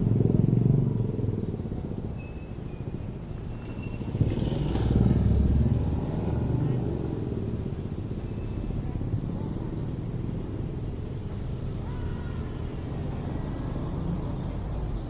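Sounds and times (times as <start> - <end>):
road traffic rumble: 0.0 - 15.0
distant children calling: 11.4 - 14.1.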